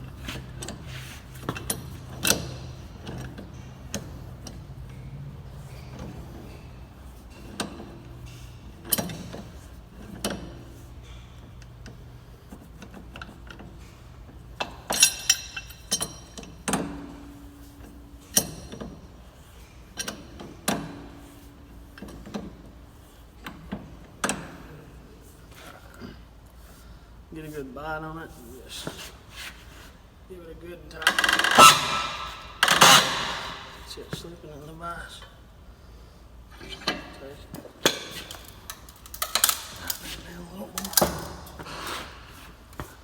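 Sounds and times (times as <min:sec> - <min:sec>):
wrench clanking on metal: 0:00.0 - 0:11.2, 0:14.6 - 0:17.5, 0:31.0 - 0:34.2, 0:36.6 - 0:42.2.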